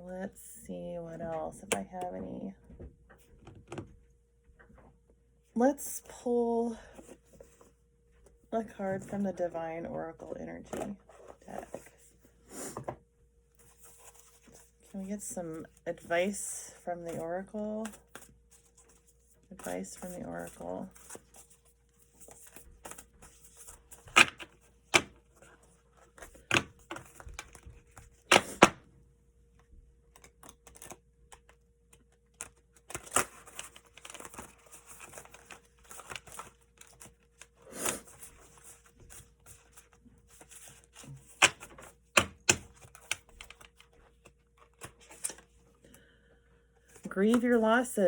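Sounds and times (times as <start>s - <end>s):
cards rustling softly: 6.8s - 9.3s, 10.7s - 12.8s, 13.5s - 28.7s, 29.6s - 47.7s
cards snapping and tapping: 41.2s - 43.9s.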